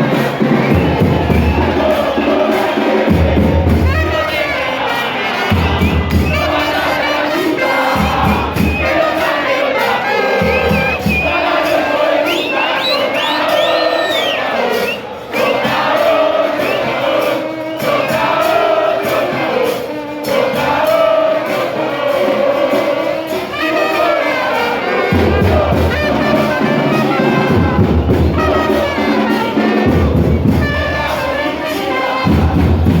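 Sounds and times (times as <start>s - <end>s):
bass drums beating: 0.0s - 4.4s, 5.5s - 7.0s, 7.9s - 9.2s
crowd singing a chant: 0.0s - 33.0s
trumpets playing: 0.0s - 33.0s.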